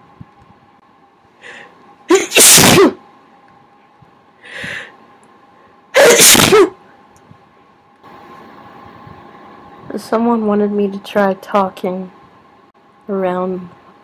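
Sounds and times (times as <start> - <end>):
short inhale: 1.4 - 1.7, 4.4 - 5.0
person sneezing: 2.1 - 3.0, 6.0 - 6.8.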